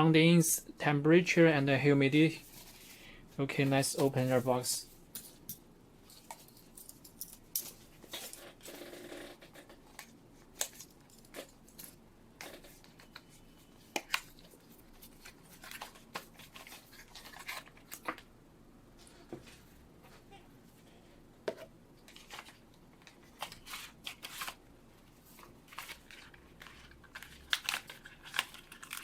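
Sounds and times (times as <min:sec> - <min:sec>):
packaging rustle: 0:22.1 - 0:29.0
packaging taps clicks and scrapes: 0:25.8 - 0:29.0.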